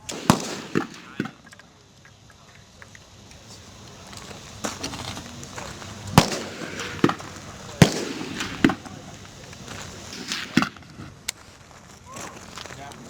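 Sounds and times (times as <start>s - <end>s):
rifle shots: 0.0s - 1.6s, 6.1s - 10.9s.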